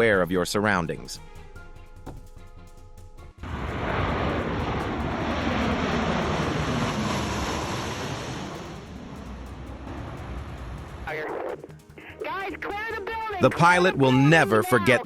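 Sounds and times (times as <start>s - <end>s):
airplane passing low overhead: 3.4s - 11.7s.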